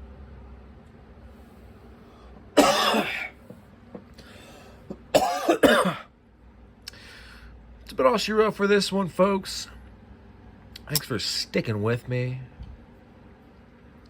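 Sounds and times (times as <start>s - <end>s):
man coughing: 2.6s - 3.4s, 5.1s - 6.1s.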